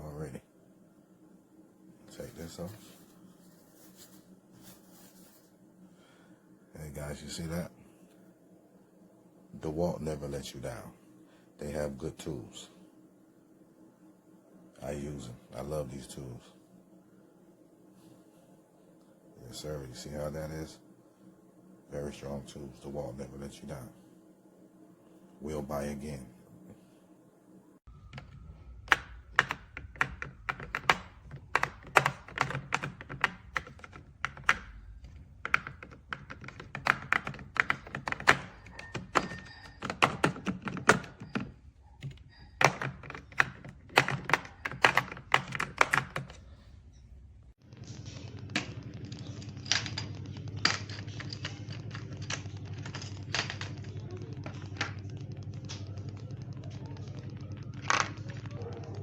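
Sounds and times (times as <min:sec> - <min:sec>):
low hum: 0:00.0 - 0:29.7, 0:46.4 - 0:59.0.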